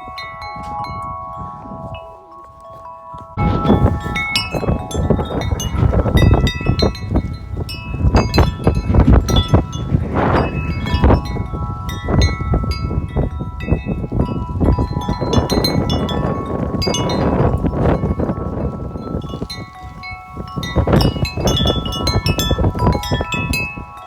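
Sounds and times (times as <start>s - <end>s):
tubular wind chime ringing: 0.0s - 24.0s
wind buffeting on microphone: 0.0s - 24.0s.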